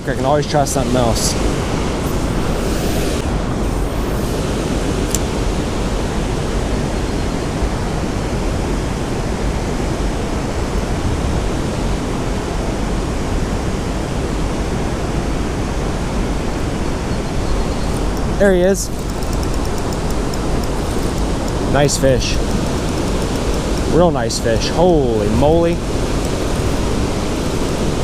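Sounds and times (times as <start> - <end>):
sharp click: 17.9 - 24.1.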